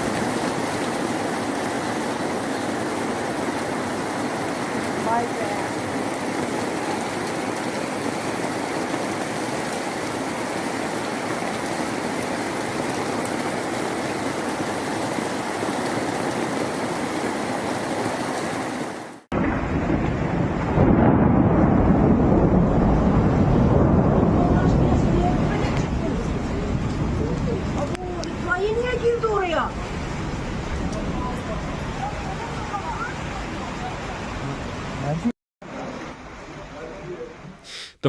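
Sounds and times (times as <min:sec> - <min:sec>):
heavy rain hissing: 0:00.0 - 0:19.3, 0:28.1 - 0:38.0
low rumbling rush of water: 0:00.0 - 0:37.7.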